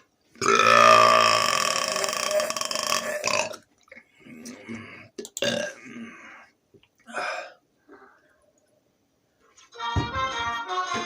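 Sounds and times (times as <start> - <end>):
man burping: 0.4 - 3.6, 4.4 - 6.3.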